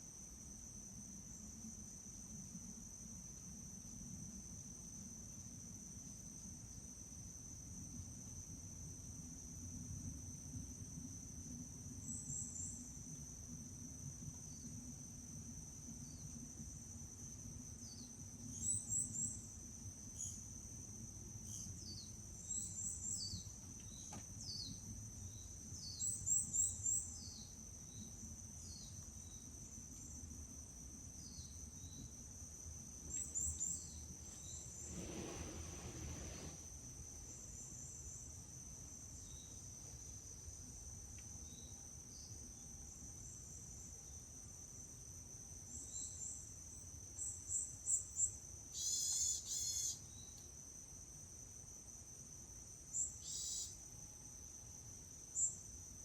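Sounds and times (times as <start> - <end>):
crickets trilling: 0.8 - 56.0
soft rush of noise: 33.0 - 37.6.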